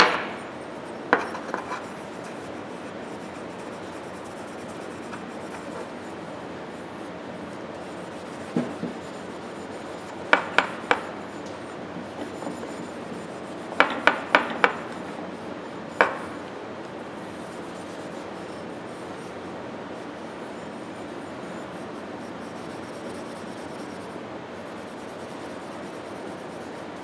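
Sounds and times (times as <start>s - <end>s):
rag rubbing steel parts: 0.0s - 16.4s.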